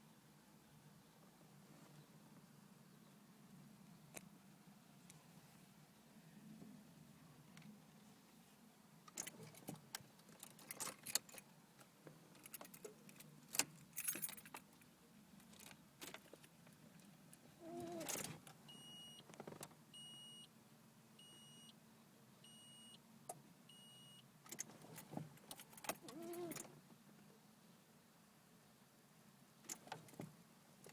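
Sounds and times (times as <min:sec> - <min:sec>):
car keys jangling: 0:12.3 - 0:14.7
dashboard warning chime: 0:23.7 - 0:24.2.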